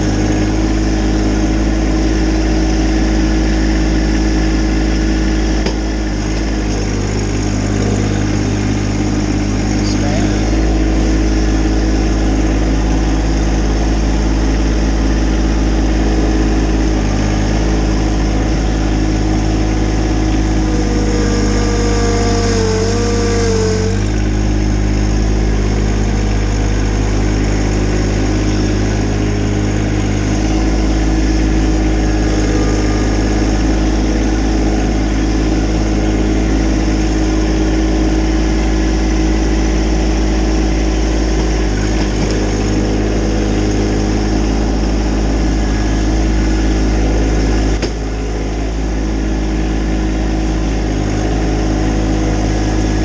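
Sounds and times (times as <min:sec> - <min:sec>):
small engine running: 0:00.0 - 0:53.0
wavering whine: 0:17.8 - 0:24.8, 0:28.1 - 0:38.0.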